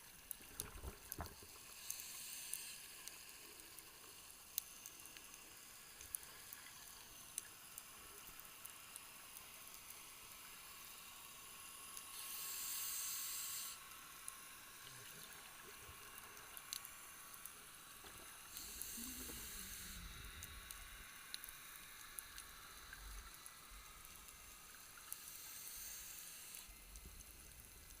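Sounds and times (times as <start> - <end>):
faint reef clicks: 0.2 - 10.6, 15.0 - 28.0
regulator exhaling bubbles: 18.1 - 20.6.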